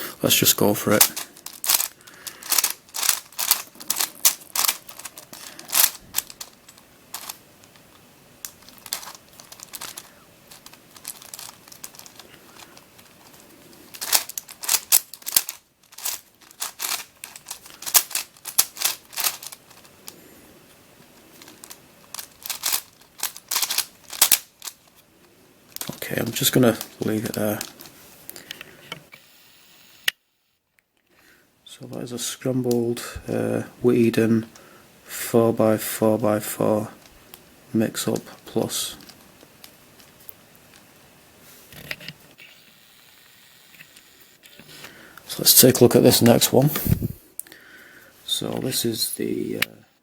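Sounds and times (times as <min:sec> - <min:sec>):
plastic puzzle clicking as turned: 0:00.9 - 0:20.2, 0:21.4 - 0:25.0.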